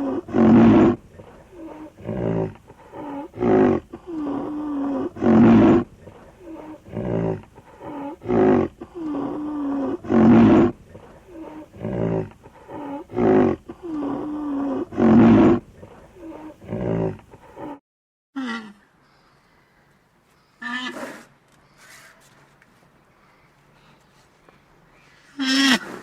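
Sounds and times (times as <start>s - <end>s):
tiger roaring: 0.0s - 17.8s.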